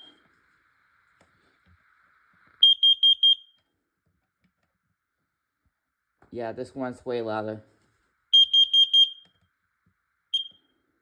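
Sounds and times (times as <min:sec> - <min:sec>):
high-pitched alarm beeps: 0:02.6 - 0:03.6, 0:08.3 - 0:09.3, 0:10.3 - 0:10.7.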